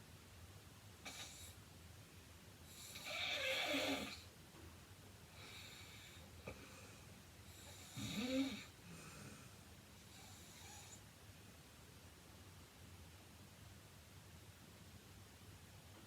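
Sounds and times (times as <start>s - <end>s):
woman snoring: 2.8s - 4.2s, 7.6s - 8.7s
soft breaths: 5.2s - 11.1s.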